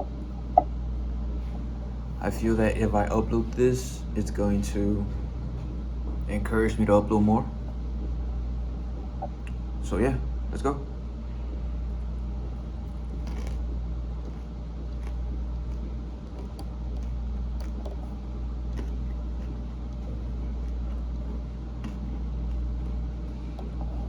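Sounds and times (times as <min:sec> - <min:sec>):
steady low hum: 0:00.0 - 0:24.0
chewing mouth clicks: 0:11.9 - 0:24.0.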